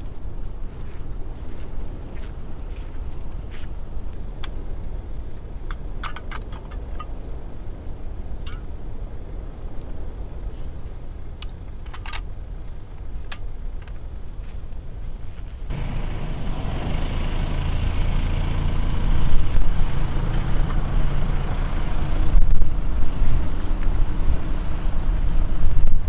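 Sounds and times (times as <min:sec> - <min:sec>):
tyre and wind noise: 0:00.0 - 0:15.8, 0:17.8 - 0:26.0
car engine and road rumble: 0:00.0 - 0:26.0
sharp clicks: 0:11.4 - 0:12.3.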